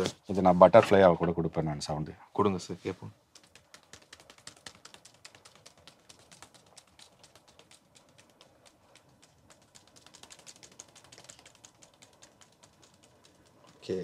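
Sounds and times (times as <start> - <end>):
rapid light ticks of flapping prop: 3.2 - 14.0.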